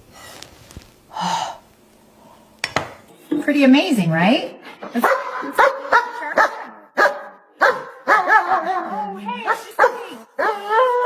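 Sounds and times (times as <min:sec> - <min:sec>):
dog barking and yelping: 0:05.0 - 0:11.0
dog whining: 0:08.3 - 0:11.0.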